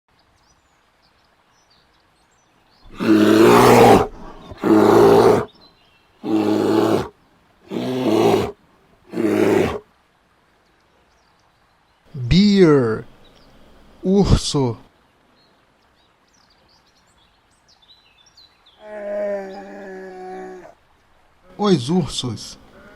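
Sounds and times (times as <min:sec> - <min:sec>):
bear roaring: 0:02.9 - 0:05.5, 0:06.2 - 0:07.1, 0:07.7 - 0:09.8, 0:18.8 - 0:20.8.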